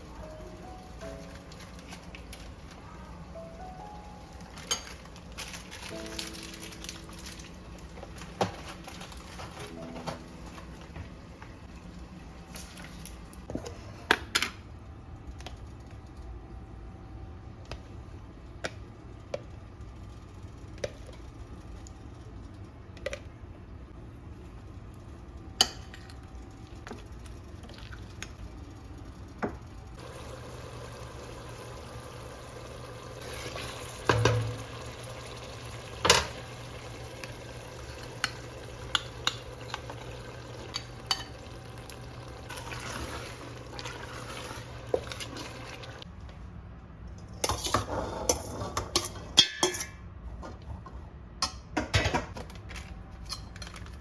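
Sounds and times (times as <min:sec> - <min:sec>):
utensils clinking against pots: 0:04.5 - 0:07.4, 0:47.4 - 0:50.1.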